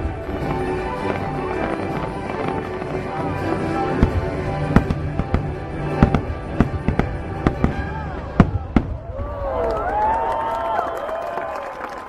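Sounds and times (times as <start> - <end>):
loud show music: 0.0 - 8.2
fireworks bangs: 0.0 - 10.2.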